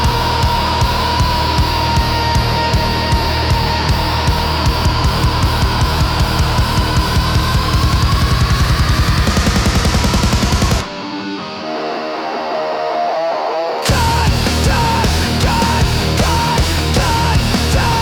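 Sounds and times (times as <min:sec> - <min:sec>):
heavy rock band playing: 0:00.0 - 0:18.0.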